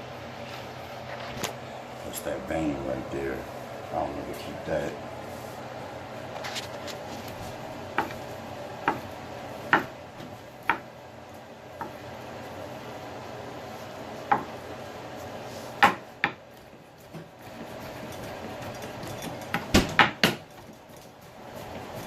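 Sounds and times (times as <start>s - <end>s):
knife chopping on cutting board: 7.9s - 8.2s, 9.7s - 10.9s, 14.3s - 14.6s, 15.8s - 17.8s.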